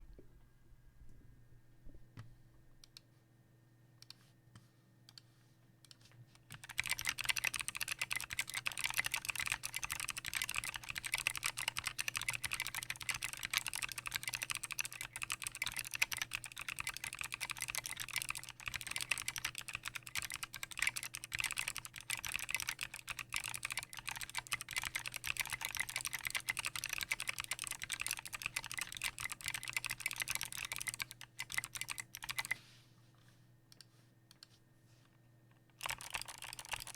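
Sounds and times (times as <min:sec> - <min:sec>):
mechanical keyboard typing: 0:06.5 - 0:32.6, 0:35.7 - 0:36.9.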